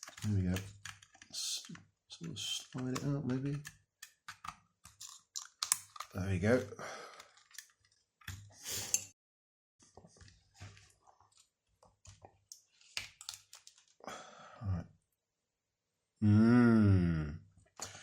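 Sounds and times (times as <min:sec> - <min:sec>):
hands handling small parts: 0:00.0 - 0:06.2, 0:07.1 - 0:09.1, 0:10.2 - 0:14.0.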